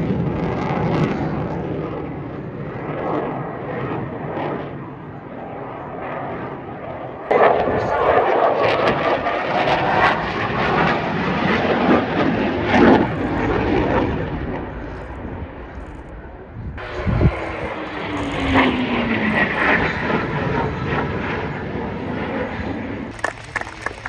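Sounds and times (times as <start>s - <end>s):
jet engines in a display pass: 0.0s - 24.0s
jet passing with falling whine: 0.0s - 24.0s.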